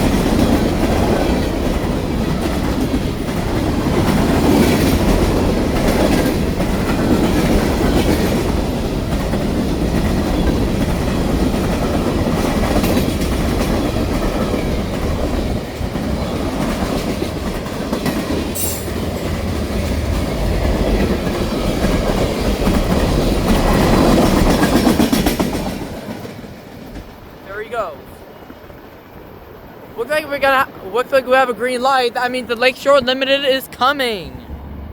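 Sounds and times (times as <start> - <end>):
wheels clacking over rail joints: 0.0 - 27.4
freight train rumbling: 0.0 - 34.9.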